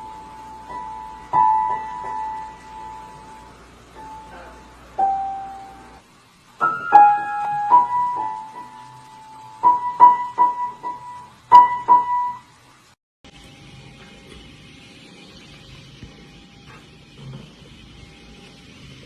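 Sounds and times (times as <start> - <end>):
piano notes: 0.0 - 12.6.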